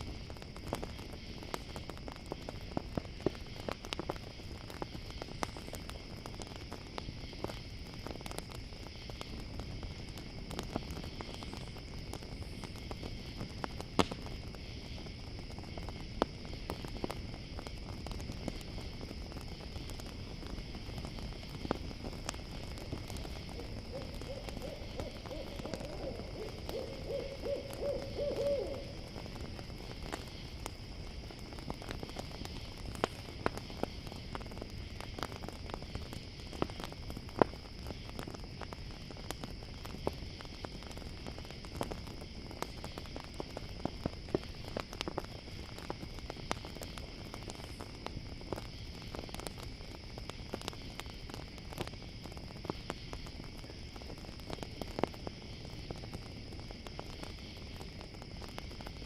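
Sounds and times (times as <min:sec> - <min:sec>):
campfire crackling and popping: 0:00.0 - 0:59.0
crickets chirping: 0:00.0 - 0:59.0
owl hooting: 0:23.5 - 0:29.1.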